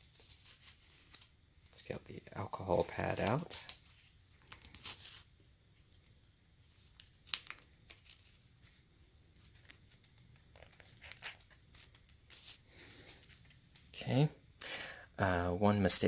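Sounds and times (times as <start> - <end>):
packet tearing and crinkling: 4.4 - 5.3, 6.9 - 8.7, 9.5 - 12.6.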